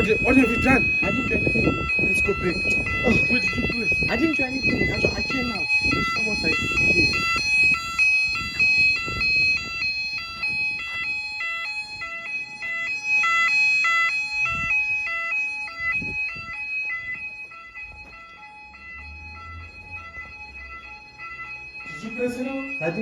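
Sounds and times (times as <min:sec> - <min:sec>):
two-tone fire alarm wailing: 0:00.0 - 0:23.0.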